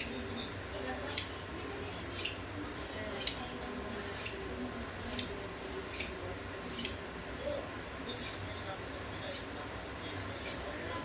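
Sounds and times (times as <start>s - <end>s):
knife scraping on sharpening rod: 1.0s - 1.4s, 2.1s - 2.4s, 3.1s - 3.4s, 4.1s - 4.4s, 5.0s - 7.0s, 8.1s - 8.5s, 9.2s - 9.6s, 10.3s - 10.7s.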